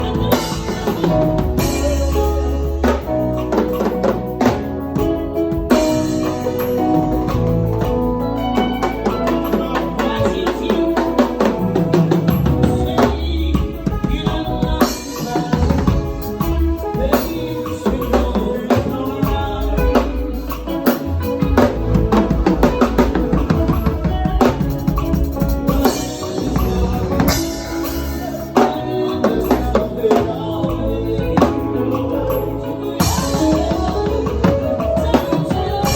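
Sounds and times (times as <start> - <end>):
drum kit playing: 0.0 - 35.9
music track with heavy bass: 10.8 - 35.9.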